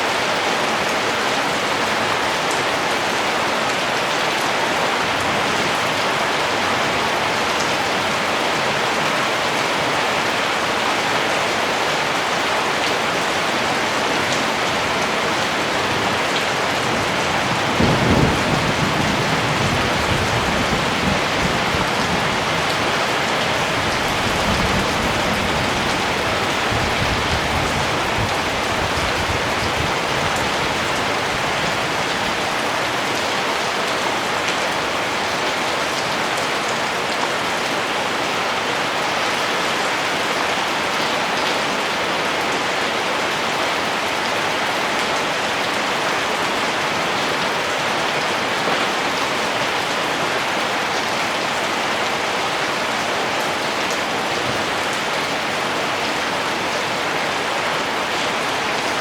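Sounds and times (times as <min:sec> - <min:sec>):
steady rain: 0:00.0 - 0:59.0
thunder rumbling: 0:16.5 - 0:31.8.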